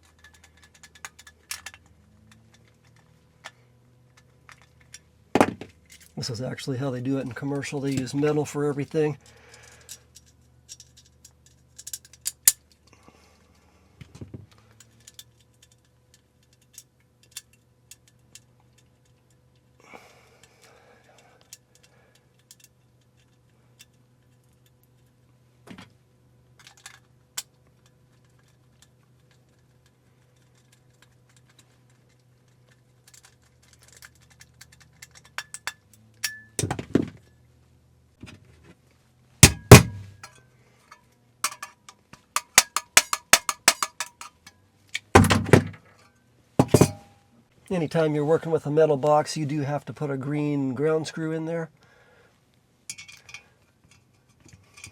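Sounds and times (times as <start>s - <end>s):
metal box knocks and clatter: 5.4s - 5.8s, 39.4s - 40.3s, 42.6s - 44.3s, 45.2s - 45.8s, 46.6s - 47.1s
metal hardware clinking: 33.1s - 36.8s, 39.4s - 40.4s, 41.4s - 45.7s, 46.6s - 47.2s.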